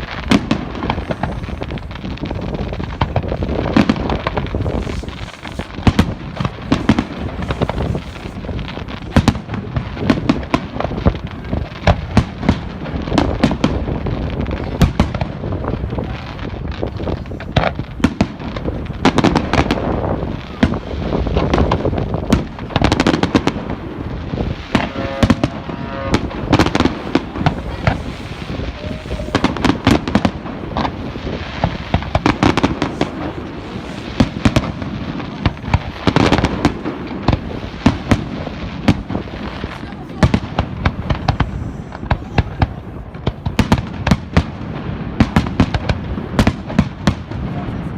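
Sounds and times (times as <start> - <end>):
fireworks bangs and booms: 0.0 - 47.9
fireworks crackling: 0.0 - 47.9.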